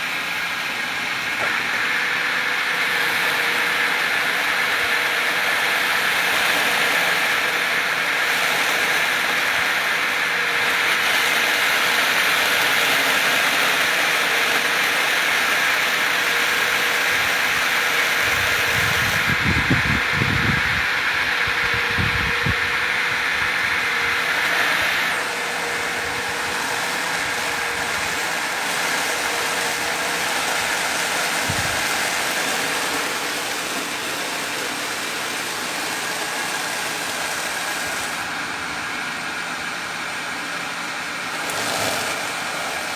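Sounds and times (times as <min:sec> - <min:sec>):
drilling rig machinery humming: 0:00.0 - 0:42.9.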